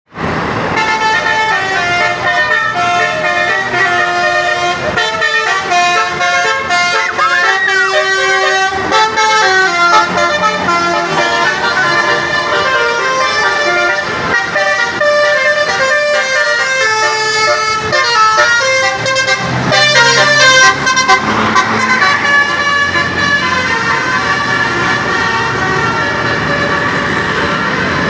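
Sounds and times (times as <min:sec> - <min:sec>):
multi-tone bus horns playing melodies: 0:00.1 - 0:28.0.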